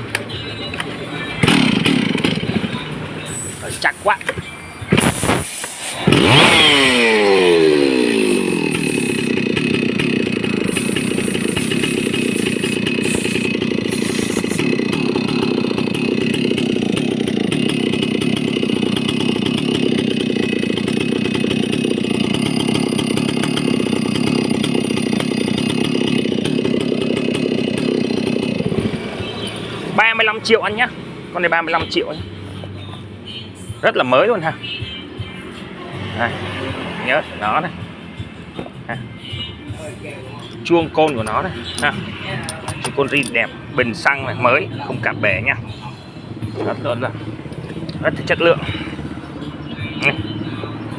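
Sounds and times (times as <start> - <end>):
chainsaw engine idling: 1.3 - 4.4, 5.0 - 32.0, 40.4 - 45.9, 46.6 - 49.3.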